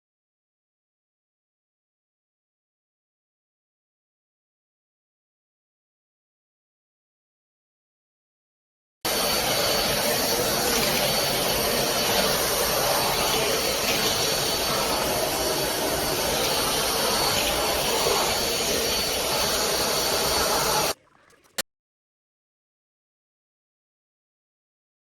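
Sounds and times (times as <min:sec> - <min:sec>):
vacuum cleaner running: 0:09.1 - 0:21.0.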